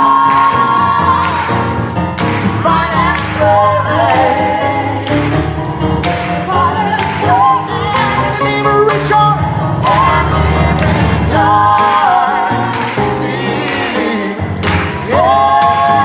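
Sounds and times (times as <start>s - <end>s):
person singing gospel song: 0.0s - 5.6s, 6.4s - 16.0s
instrumental accompaniment: 0.0s - 16.0s.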